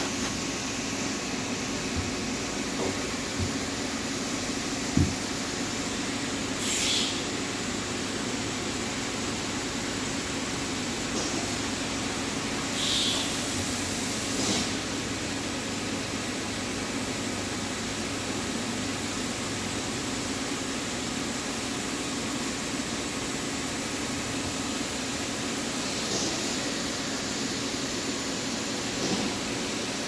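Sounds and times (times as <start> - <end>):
wire edm machine hissing: 0.0 - 15.1.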